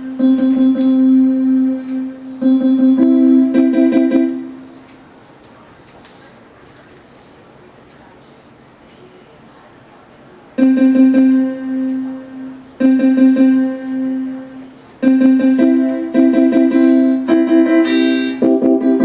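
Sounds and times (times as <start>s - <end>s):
electronic keyboard piano: 0.0s - 5.7s, 10.6s - 19.0s.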